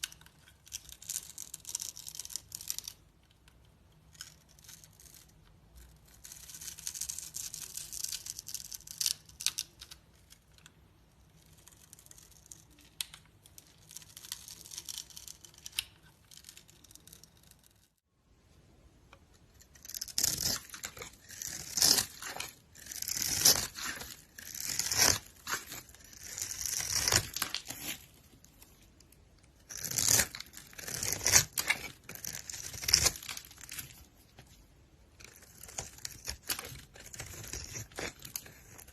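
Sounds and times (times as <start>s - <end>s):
blade scraping through soap: 19.6s - 28.2s, 29.6s - 34.5s, 35.2s - 38.9s.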